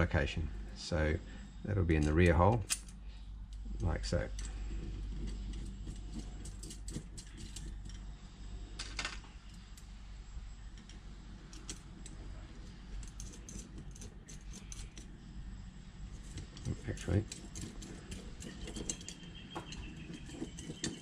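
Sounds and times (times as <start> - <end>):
small metal parts clicking: 10.8 - 12.2, 12.9 - 15.1, 16.2 - 21.0.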